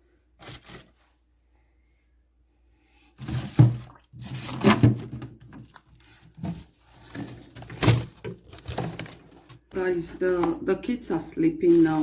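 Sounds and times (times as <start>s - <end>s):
handling rustling: 4.3s - 10.6s.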